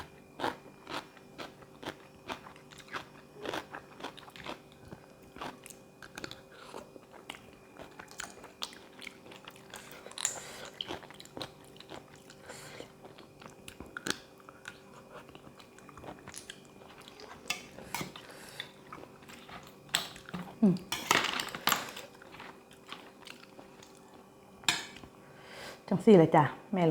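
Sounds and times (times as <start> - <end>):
person chewing crunchy food: 0.0 - 20.7, 21.9 - 25.2.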